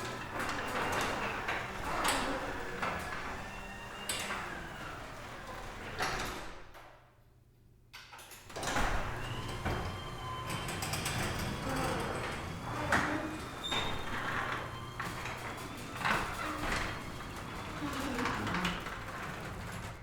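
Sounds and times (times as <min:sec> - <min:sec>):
garage door rattling along tracks: 0:00.0 - 0:06.8, 0:08.4 - 0:20.0
garage door clunks: 0:08.3 - 0:20.0.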